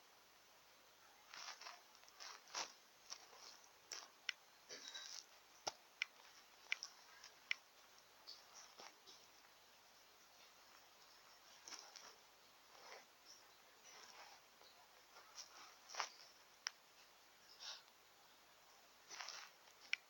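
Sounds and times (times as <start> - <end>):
small clicks and taps: 1.4 - 9.3.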